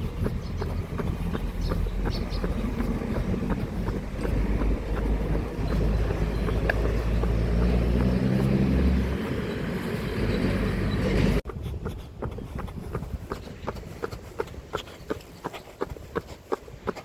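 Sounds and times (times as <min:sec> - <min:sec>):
running footsteps: 0:00.0 - 0:17.0.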